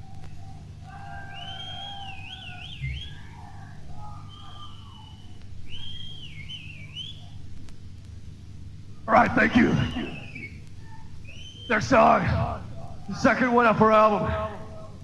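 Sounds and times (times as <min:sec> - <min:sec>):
shrill whistling from crowd: 0:00.0 - 0:07.5, 0:09.1 - 0:13.2
low amplifier hum: 0:00.0 - 0:15.0.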